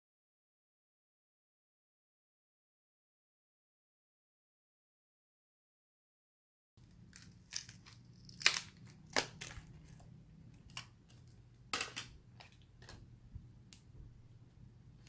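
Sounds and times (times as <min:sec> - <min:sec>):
adhesive crackling and snapping: 0:07.1 - 0:13.0.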